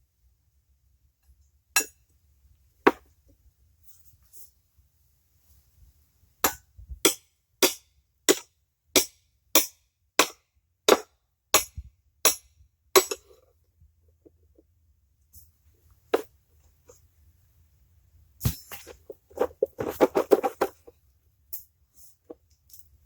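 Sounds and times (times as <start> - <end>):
hammer striking metal: 9.0 - 13.2.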